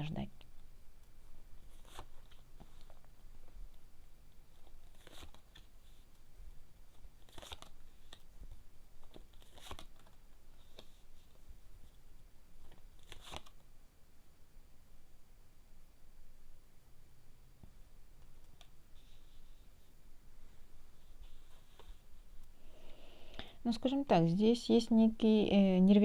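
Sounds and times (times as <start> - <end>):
faint rustling of cards: 0.4 - 13.7, 17.6 - 23.7
cards snapping: 7.2 - 8.3, 12.7 - 13.6.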